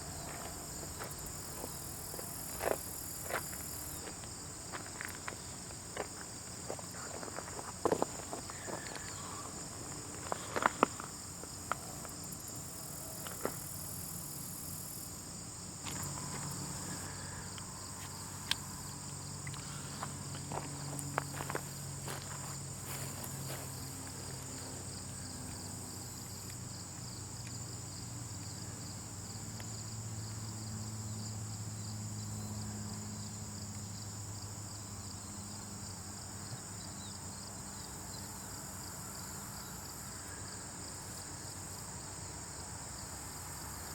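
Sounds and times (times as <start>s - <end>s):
insect chirring: 0.0s - 34.1s.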